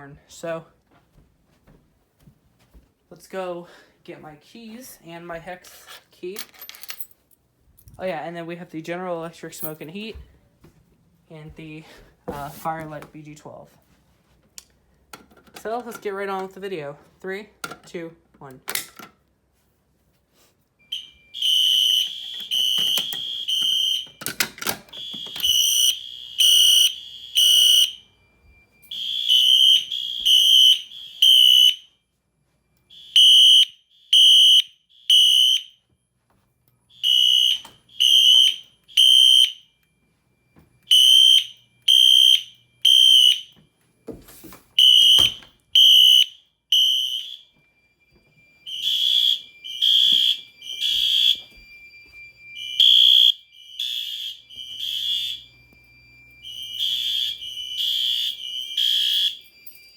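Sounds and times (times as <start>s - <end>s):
fire alarm horns blasting: 20.8s - 43.8s, 44.8s - 59.9s.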